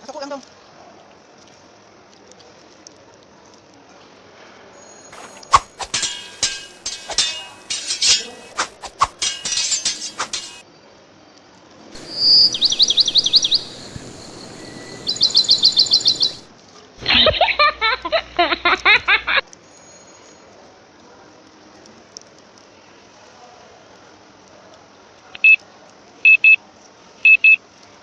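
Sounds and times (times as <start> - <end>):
clinking ringing clicks: 12.0 - 16.5
rapid high chirps: 12.0 - 16.5.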